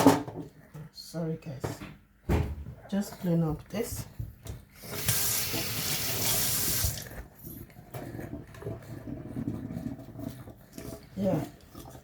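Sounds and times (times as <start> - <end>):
water running from a tap: 4.8 - 7.1.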